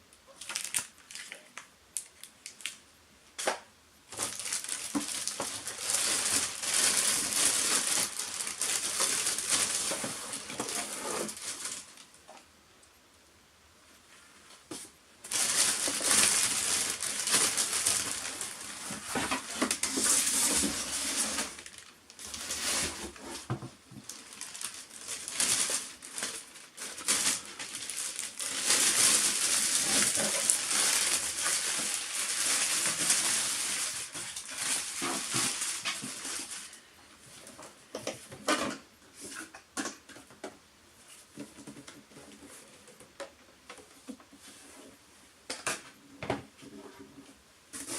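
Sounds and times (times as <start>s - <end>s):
packaging rustling and crinkling: 0.3s - 2.8s, 3.4s - 12.4s, 14.2s - 40.5s.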